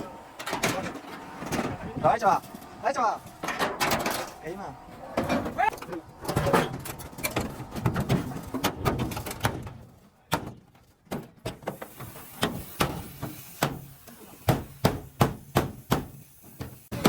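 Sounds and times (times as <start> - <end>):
hammer strikes: 14.5 - 16.1.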